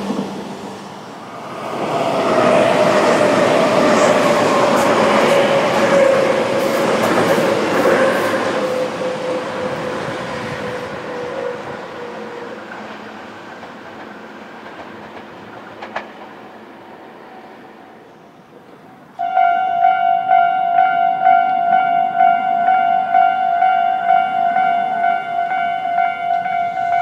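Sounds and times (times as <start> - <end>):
electric train wheels clattering: 1.5 - 16.6, 21.2 - 27.0.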